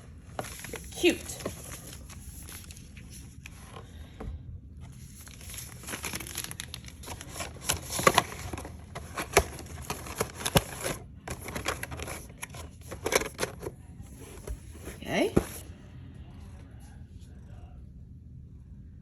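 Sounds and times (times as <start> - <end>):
plastic packaging crinkling: 0.4 - 3.5, 5.0 - 13.5.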